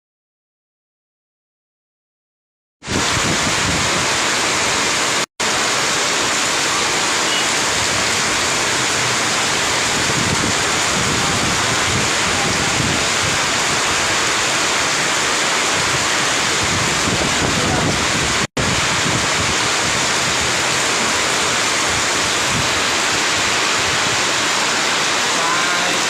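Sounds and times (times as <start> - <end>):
wind gusts buffeting microphone: 2.9 - 4.2, 9.6 - 14.2, 15.7 - 24.3
heavy rain hiss: 2.9 - 26.0.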